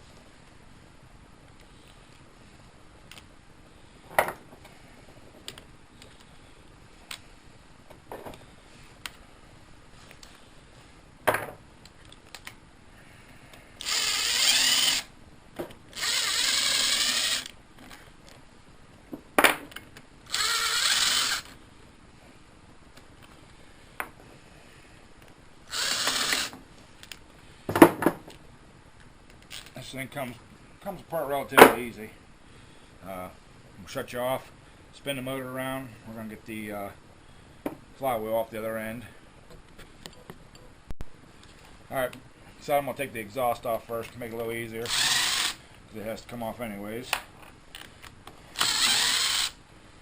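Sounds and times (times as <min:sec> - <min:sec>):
impact wrench running: 0:13.8 - 0:15.1, 0:15.9 - 0:17.5, 0:20.3 - 0:21.5, 0:25.7 - 0:26.6, 0:44.9 - 0:45.6, 0:48.5 - 0:49.6.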